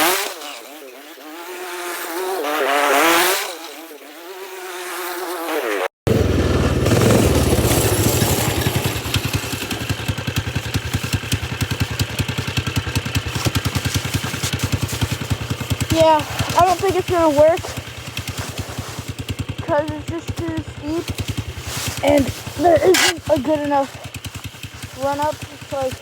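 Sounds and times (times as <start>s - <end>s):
snowmobile engine whine: 0.0s - 26.0s.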